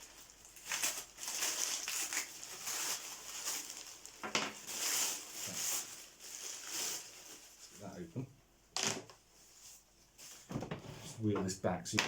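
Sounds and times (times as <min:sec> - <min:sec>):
packaging rustling and crinkling: 0:00.0 - 0:08.1, 0:09.5 - 0:10.8.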